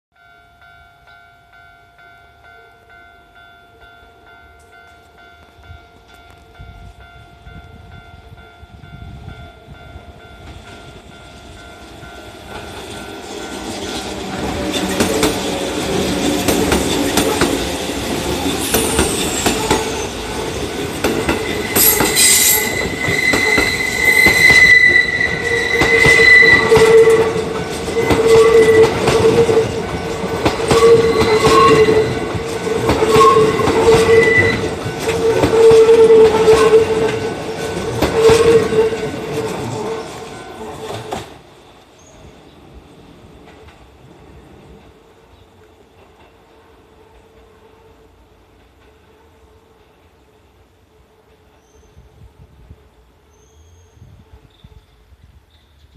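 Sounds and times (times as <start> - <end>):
high steady tone: 0.2 - 39.2
rhythmic pulsing rumble of train cars: 0.2 - 55.9
train wheels clacking on rail joints: 10.4 - 41.4.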